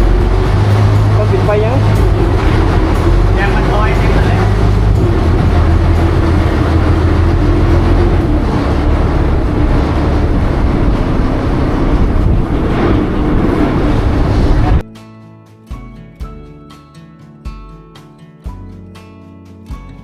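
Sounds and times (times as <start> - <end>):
boat engine rumbling: 0.0 - 14.9.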